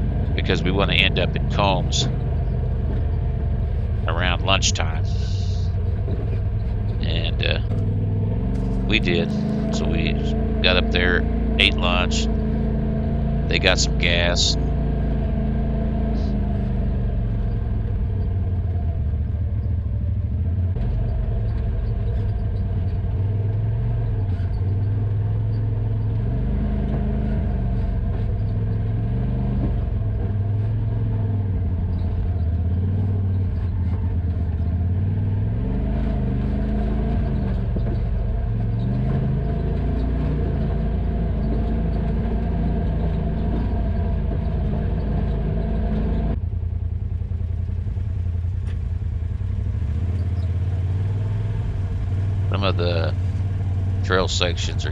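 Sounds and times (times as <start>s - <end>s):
utility vehicle engine revving: 0.0s - 54.9s.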